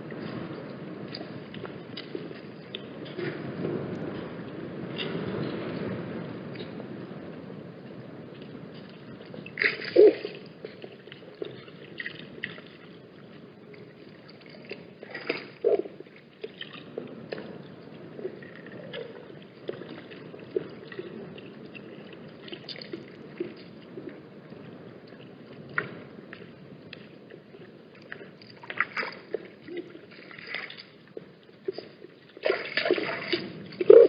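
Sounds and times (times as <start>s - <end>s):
water splashing and dripping: 8.4s - 24.2s, 25.1s - 34.0s.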